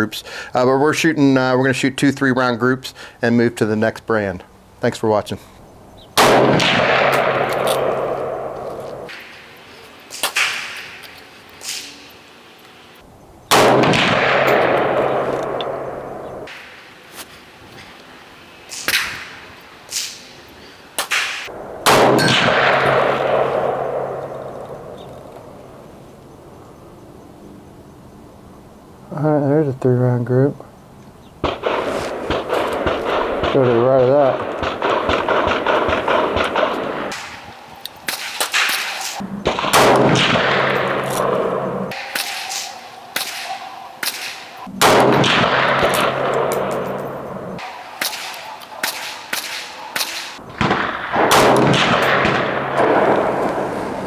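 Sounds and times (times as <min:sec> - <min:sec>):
rifle gunshots: 0:06.2 - 0:11.0, 0:13.5 - 0:16.8, 0:21.0 - 0:25.9, 0:31.4 - 0:54.0.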